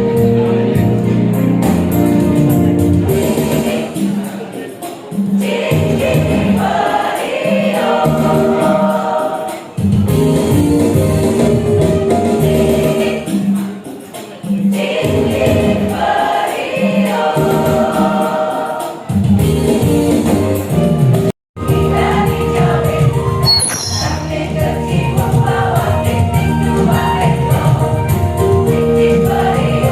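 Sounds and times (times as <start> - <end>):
women's choir singing: 3.3 - 9.8, 12.6 - 13.7, 14.4 - 19.2, 21.7 - 29.9.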